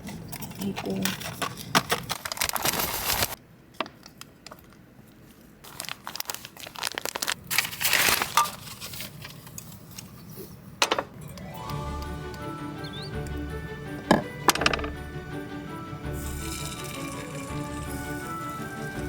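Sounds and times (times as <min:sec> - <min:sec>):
plastic packaging crinkling: 0:00.1 - 0:10.2.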